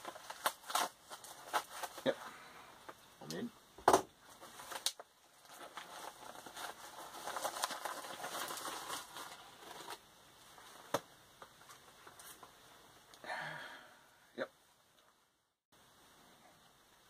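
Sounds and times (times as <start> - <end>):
packaging rustling and crinkling: 0.0 - 2.3, 4.2 - 12.6.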